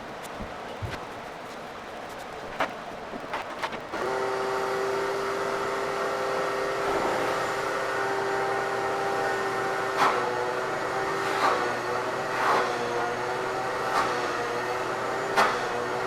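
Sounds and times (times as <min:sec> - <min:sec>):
vacuum cleaner running: 0:03.3 - 0:16.0.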